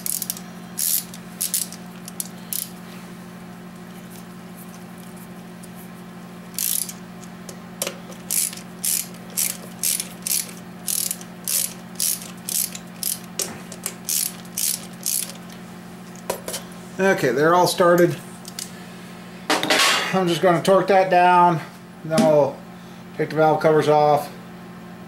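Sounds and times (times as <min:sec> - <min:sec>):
ratchet wrench clicking: 0:00.0 - 0:02.8, 0:06.5 - 0:15.6.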